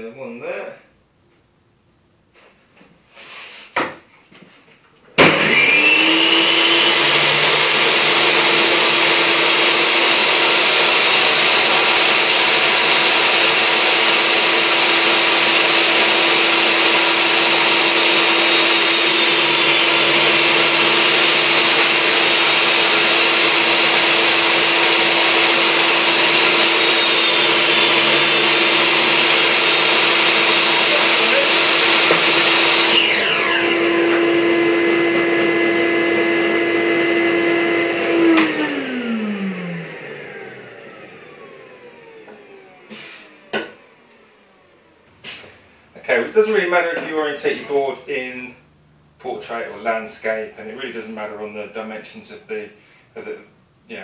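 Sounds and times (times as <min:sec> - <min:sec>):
saw cutting timber: 0:05.2 - 0:43.7
power saw whirring: 0:05.2 - 0:44.9.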